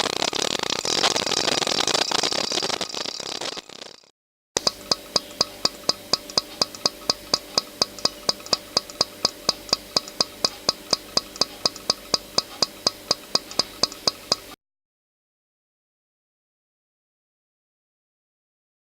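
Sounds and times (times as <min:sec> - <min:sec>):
fast sharp clicks: 0:00.0 - 0:14.6
steady hum: 0:04.6 - 0:14.6.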